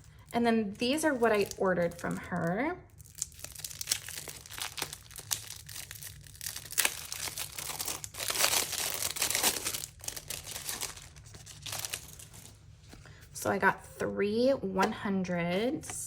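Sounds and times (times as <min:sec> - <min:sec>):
packaging crinkling and tearing: 0:00.0 - 0:12.7.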